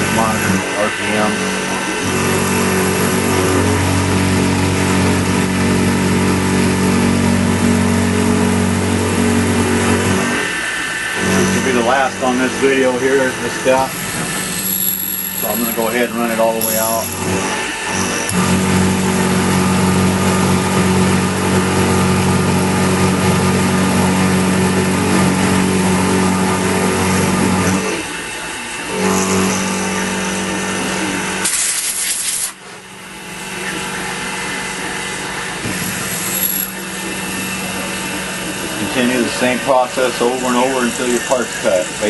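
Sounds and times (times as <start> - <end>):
metal cutting grinding noise: 0.0 - 23.4, 33.6 - 42.0
short loud hiss: 31.5 - 32.5.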